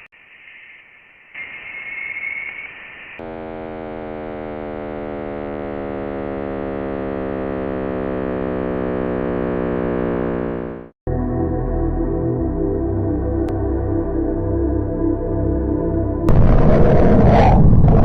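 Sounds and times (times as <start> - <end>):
hiss: 0.0 - 3.2
buzzing electronic drone: 3.2 - 11.0, 16.3 - 18.0.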